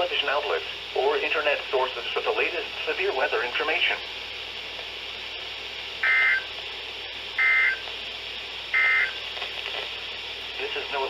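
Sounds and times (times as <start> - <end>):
faint radio hiss: 0.0 - 11.0
two-tone warbling data tones: 6.0 - 6.5, 7.4 - 7.8, 8.8 - 9.2.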